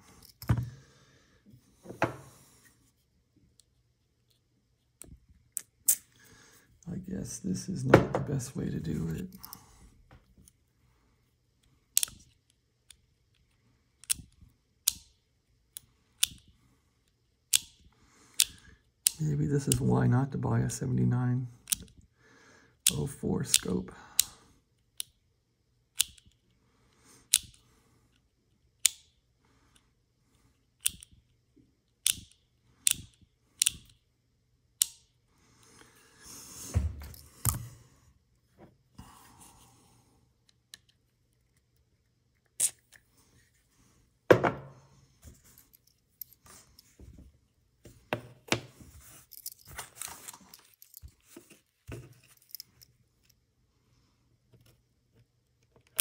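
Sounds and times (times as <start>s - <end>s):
handling and rubbing: 44.9s - 52.9s.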